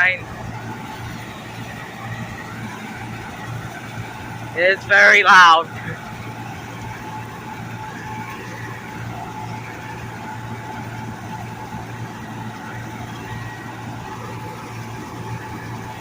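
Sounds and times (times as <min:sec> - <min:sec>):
combine harvester engine drone: 0:00.0 - 0:16.0
thin steady whine: 0:00.0 - 0:16.0.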